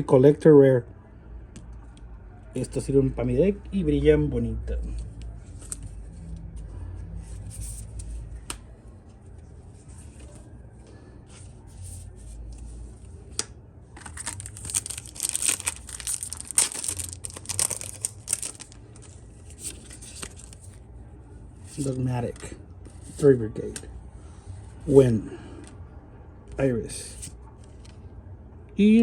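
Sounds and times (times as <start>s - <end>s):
foil pack crinkling and tearing: 14.0s - 20.6s.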